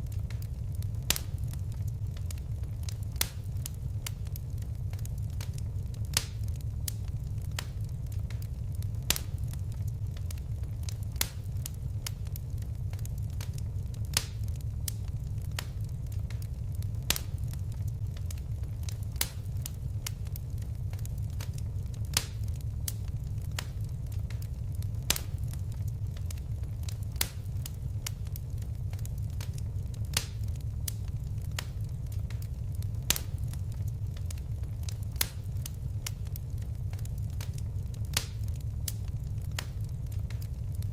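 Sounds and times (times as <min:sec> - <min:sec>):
fire crackling: 0:00.0 - 0:40.9.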